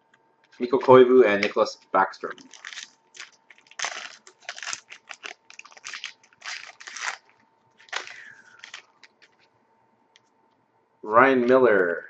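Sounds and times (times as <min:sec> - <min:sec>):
card packaging crackling and rustling: 0:02.2 - 0:09.5.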